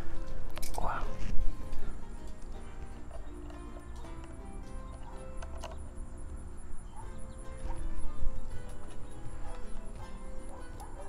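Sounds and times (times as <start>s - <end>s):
music with held notes: 0.0s - 11.0s.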